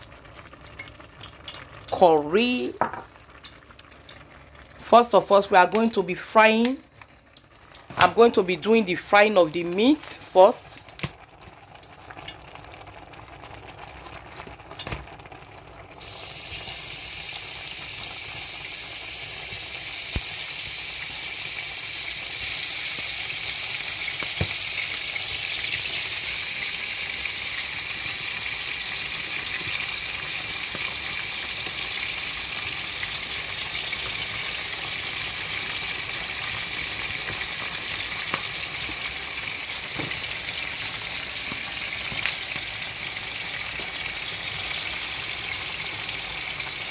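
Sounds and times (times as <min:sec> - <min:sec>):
meat sizzling in hot oil: 0:09.7 - 0:46.9.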